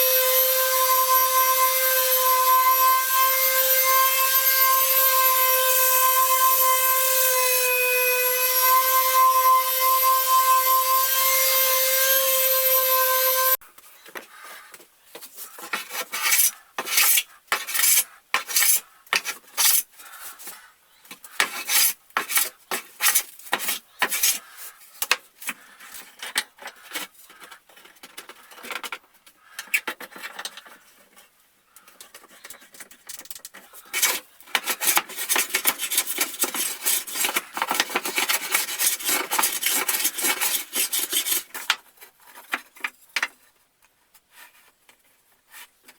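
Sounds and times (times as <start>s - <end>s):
hand scraping wood: 13.0s - 42.9s, 44.2s - 45.9s.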